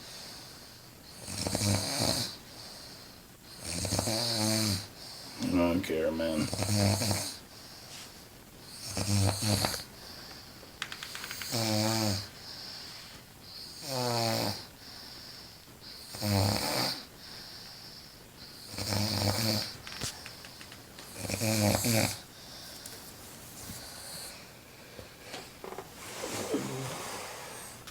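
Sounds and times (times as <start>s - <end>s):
woman snoring loudly: 26.1s - 27.8s.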